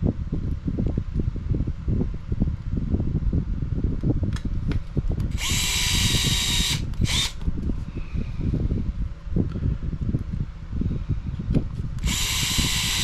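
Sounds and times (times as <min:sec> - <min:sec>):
low rumble: 0:00.0 - 0:13.0
cordless screwdriver whirring: 0:05.2 - 0:07.5, 0:12.0 - 0:13.0.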